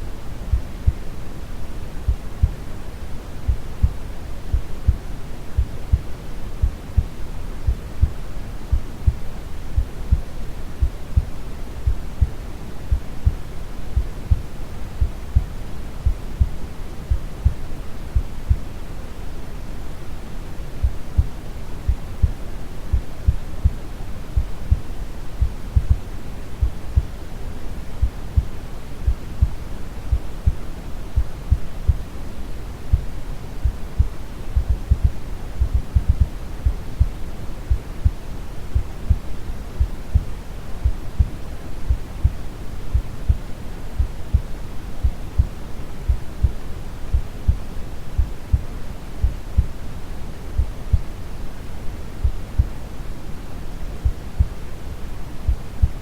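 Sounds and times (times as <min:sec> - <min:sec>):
heartbeat thumps: 0:00.5 - 0:01.1, 0:02.1 - 0:02.6, 0:03.5 - 0:18.7, 0:20.8 - 0:23.8, 0:24.4 - 0:27.2, 0:28.0 - 0:30.6, 0:32.9 - 0:49.8, 0:50.6 - 0:51.2, 0:52.2 - 0:52.8, 0:54.0 - 0:54.6, 0:55.5 - 0:56.0.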